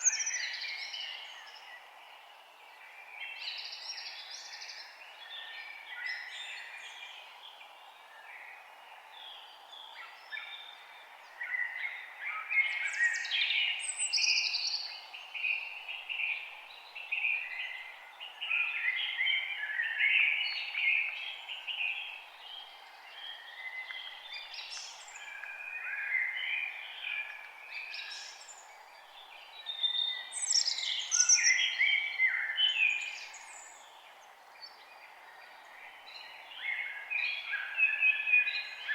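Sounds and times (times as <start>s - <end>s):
songbirds chirping and trilling: 0.0s - 38.9s.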